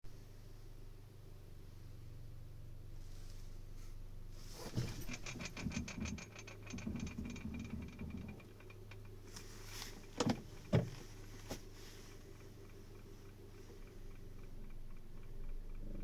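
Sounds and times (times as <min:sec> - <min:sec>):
steady low hum: 0:00.2 - 0:16.0
loud engine knocks: 0:04.7 - 0:09.2, 0:10.2 - 0:11.1
fast ticking: 0:05.0 - 0:09.3, 0:12.2 - 0:16.0.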